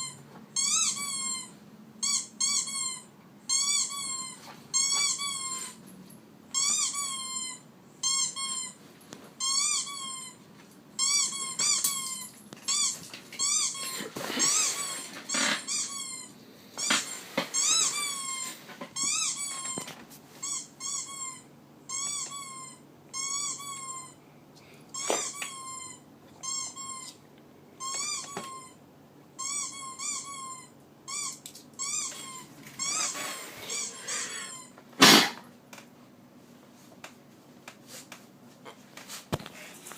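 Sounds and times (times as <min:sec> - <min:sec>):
dog squeaking: 0:00.0 - 0:05.8, 0:06.5 - 0:08.8, 0:09.4 - 0:10.4, 0:11.0 - 0:24.2, 0:24.9 - 0:27.2, 0:27.8 - 0:28.8, 0:29.4 - 0:34.8.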